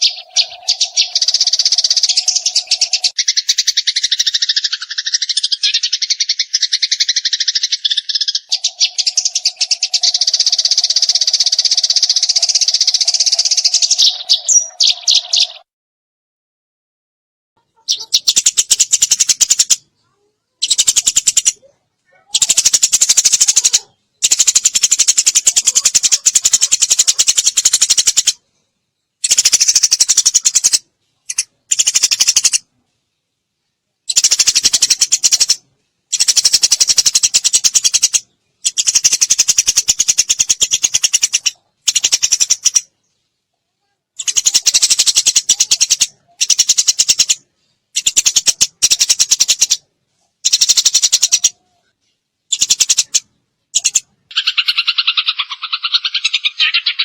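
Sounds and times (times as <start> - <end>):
sparrow chirping chatter: 0.0 - 15.6, 17.6 - 32.9, 33.6 - 57.0.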